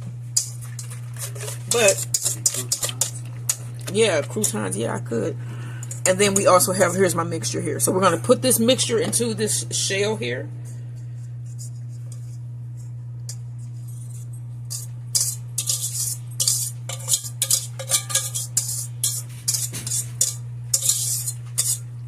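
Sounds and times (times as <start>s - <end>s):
steady low hum: 0.0s - 22.0s
utensil scraping a mixing bowl: 0.3s - 4.8s, 5.6s - 6.9s, 11.2s - 22.0s.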